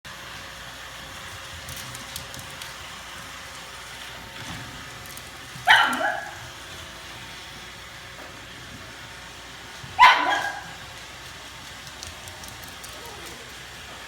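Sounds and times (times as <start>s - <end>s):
dog barking: 5.6s - 6.5s, 10.0s - 10.8s.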